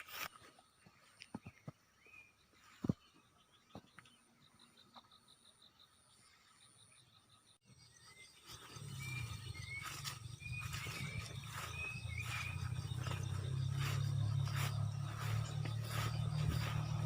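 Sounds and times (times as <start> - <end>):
insects and frogs calling: 0.1 - 17.0
short chirping calls: 2.0 - 17.0
low rumble: 9.1 - 17.0.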